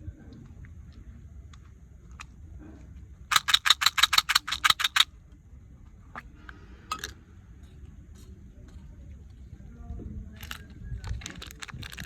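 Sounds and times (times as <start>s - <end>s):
sharp clicks: 3.3s - 5.1s.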